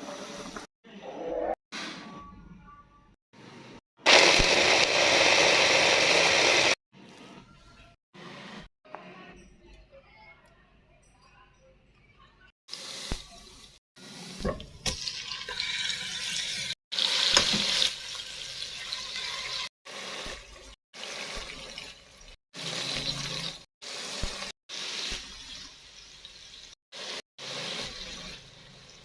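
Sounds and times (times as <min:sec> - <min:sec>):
water running from a tap: 0:12.7 - 0:26.8.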